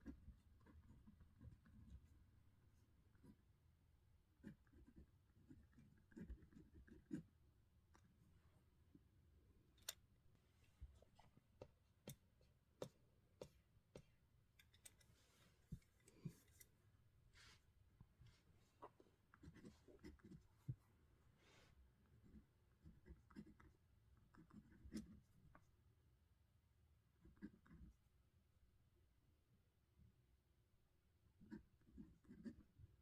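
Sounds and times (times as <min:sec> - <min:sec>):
pen scratching on paper: 0:04.4 - 0:07.3.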